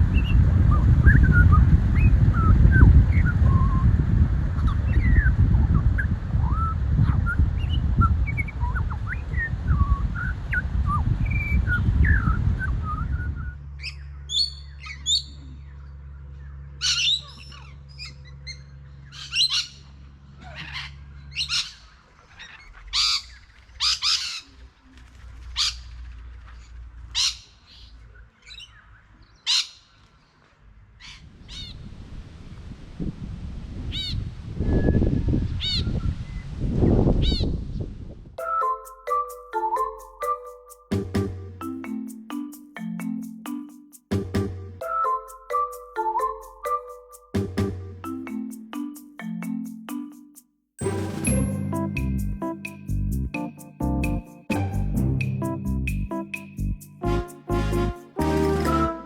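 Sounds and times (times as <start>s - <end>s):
small bird chirps: 13.8s - 15.7s.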